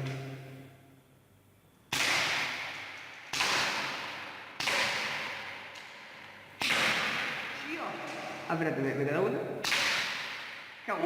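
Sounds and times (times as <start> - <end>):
airsoft revolver shots: 1.9 - 7.6, 9.6 - 10.8.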